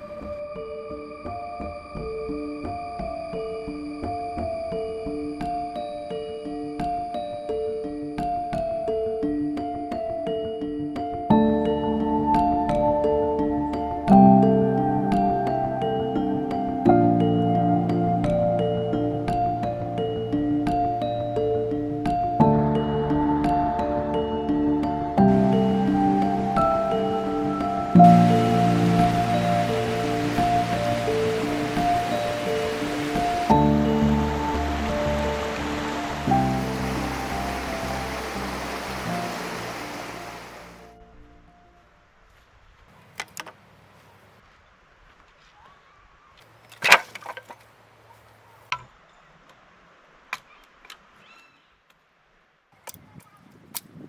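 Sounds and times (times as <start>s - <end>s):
soft background music: 0.0s - 42.0s
river water rushing: 11.5s - 41.0s
firewood cracking: 46.7s - 47.7s.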